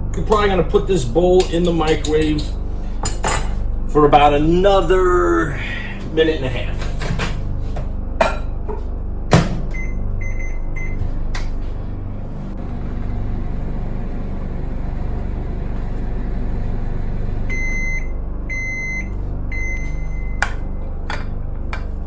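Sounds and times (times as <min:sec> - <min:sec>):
microwave oven humming: 0:00.0 - 0:22.0
long beeps: 0:09.8 - 0:11.0, 0:17.5 - 0:20.4.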